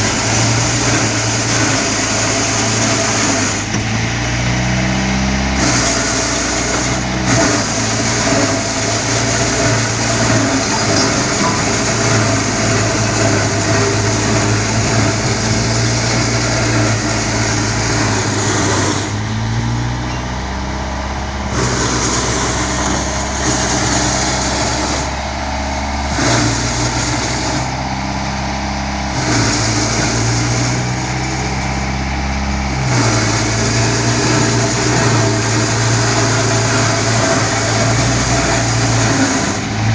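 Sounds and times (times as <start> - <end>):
road roller diesel engine: 0.0 - 39.9.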